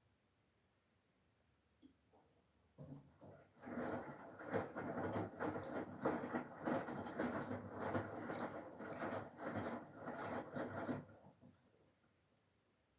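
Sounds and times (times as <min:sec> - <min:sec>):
washing machine drum churning: 0:02.8 - 0:11.4.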